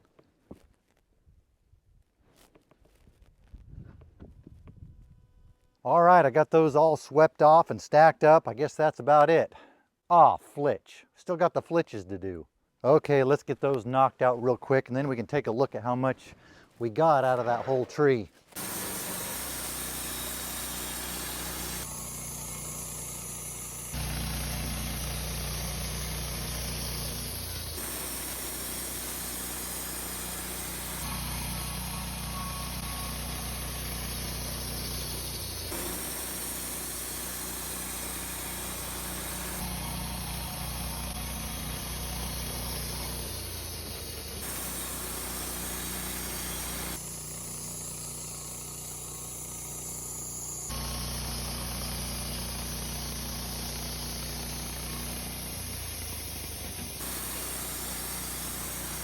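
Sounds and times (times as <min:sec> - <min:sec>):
band sawmill sawing wood: 0:17.0 - 0:55.8, 0:56.8 - 0:59.0.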